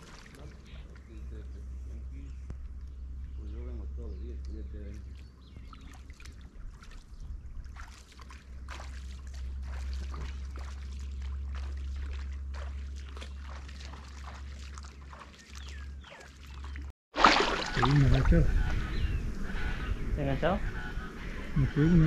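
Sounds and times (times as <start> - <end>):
river water trickling: 0.0 - 19.6
steady low rumble: 0.4 - 5.1, 17.6 - 22.0.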